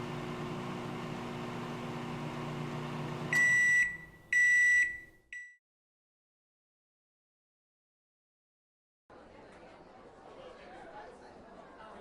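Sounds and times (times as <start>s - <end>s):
microwave oven humming: 0.0s - 5.2s
microwave beeps: 2.6s - 5.6s.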